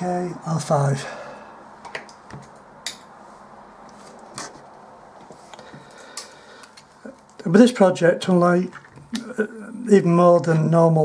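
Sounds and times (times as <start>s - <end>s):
small tools clicking and tapping: 1.8s - 3.1s.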